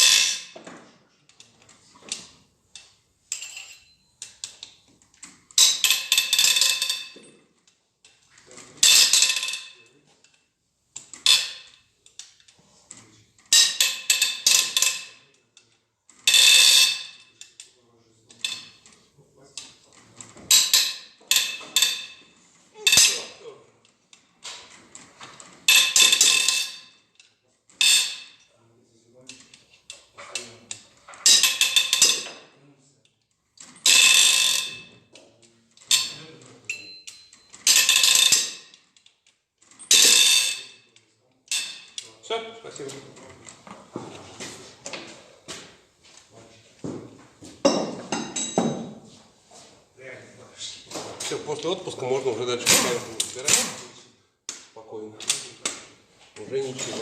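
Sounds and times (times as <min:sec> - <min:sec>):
metallic rattle: 0:00.0 - 0:00.6, 0:02.1 - 0:07.3, 0:08.6 - 0:09.9, 0:11.0 - 0:15.2, 0:20.5 - 0:23.4, 0:24.4 - 0:27.1, 0:29.3 - 0:32.4, 0:35.8 - 0:39.0, 0:39.6 - 0:40.9.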